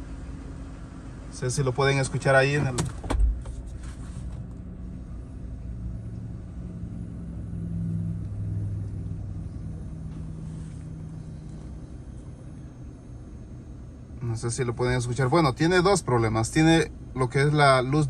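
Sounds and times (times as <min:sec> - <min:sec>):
engine idling with a knock: 0:02.6 - 0:03.7.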